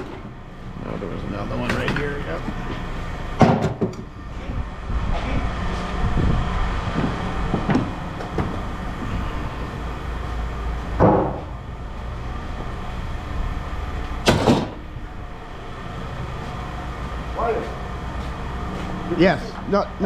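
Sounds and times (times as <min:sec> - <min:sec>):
car parts knocking and clunking: 0:00.0 - 0:00.5, 0:01.5 - 0:04.1, 0:06.9 - 0:08.8, 0:10.9 - 0:11.6
low engine rumble: 0:00.0 - 0:20.0.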